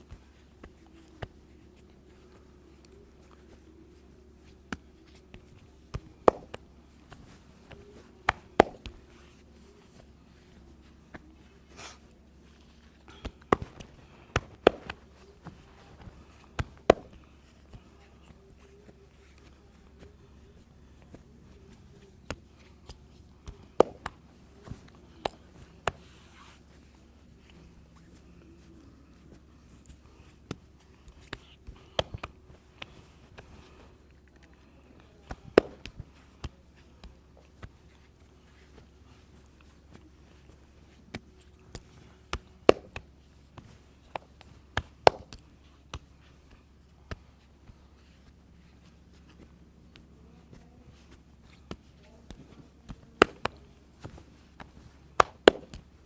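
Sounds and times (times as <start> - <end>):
hand slaps in massage: 0.0 - 56.0.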